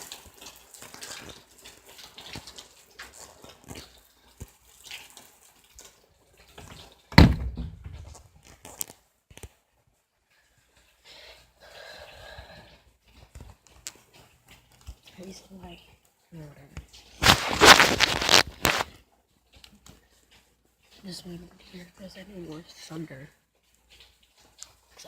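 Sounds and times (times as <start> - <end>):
rainwater dripping and splashing: 0.0 - 25.0
loud sudden thump: 7.2 - 8.2.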